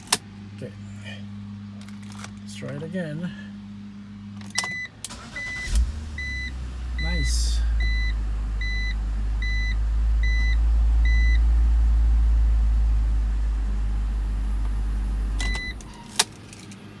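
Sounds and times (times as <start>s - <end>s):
car engine idling: 0.0s - 17.0s
dashboard warning chime: 4.5s - 11.4s, 15.4s - 16.2s.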